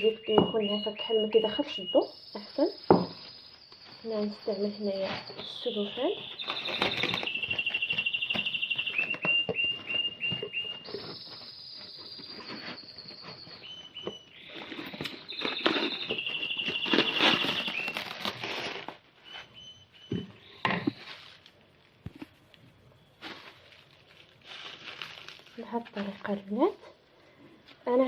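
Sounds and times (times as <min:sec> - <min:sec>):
songbird trilling and chirping: 0:00.0 - 0:18.3, 0:19.2 - 0:21.0
cellophane crinkling: 0:02.4 - 0:19.5, 0:20.9 - 0:26.9.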